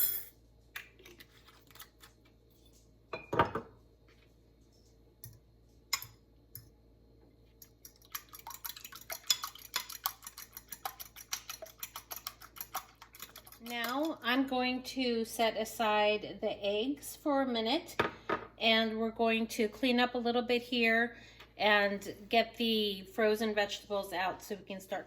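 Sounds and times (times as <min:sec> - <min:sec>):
eggs being whisked in bowl: 0:07.6 - 0:14.5.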